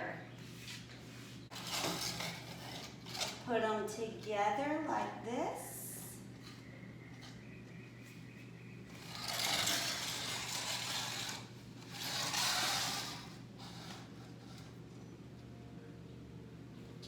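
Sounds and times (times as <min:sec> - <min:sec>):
plastic panels scraping: 0:01.5 - 0:03.6, 0:08.9 - 0:14.8
low hum: 0:03.0 - 0:17.0.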